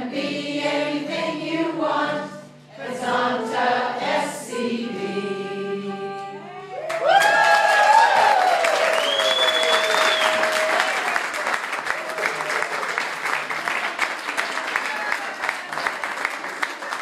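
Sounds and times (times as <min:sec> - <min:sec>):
group singing held note: 0:00.0 - 0:06.7
high whoop: 0:06.6 - 0:11.2
audience applauding: 0:06.8 - 0:17.0.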